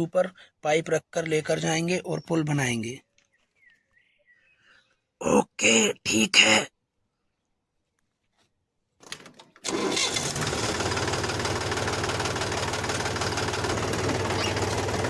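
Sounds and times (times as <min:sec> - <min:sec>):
tractor engine starting and chugging: 0:09.0 - 0:15.0.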